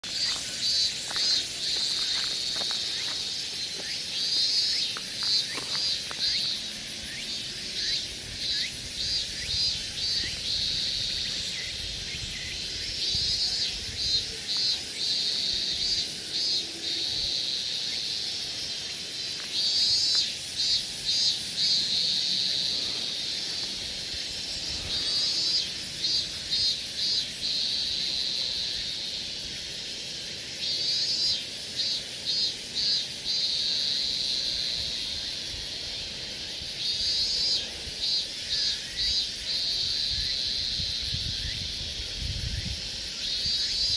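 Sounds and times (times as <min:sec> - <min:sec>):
insects buzzing and trilling: 0:00.0 - 0:43.9.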